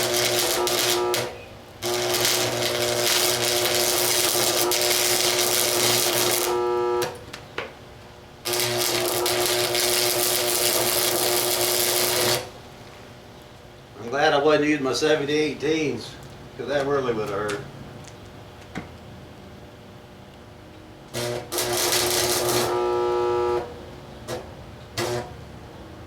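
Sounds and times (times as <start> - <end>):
arc welding crackling hiss: 0.0 - 7.4, 8.4 - 13.2, 21.1 - 25.4.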